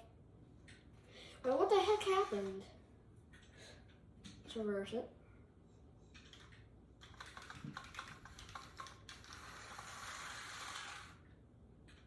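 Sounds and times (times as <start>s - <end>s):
model train whirring hiss: 9.4s - 11.2s.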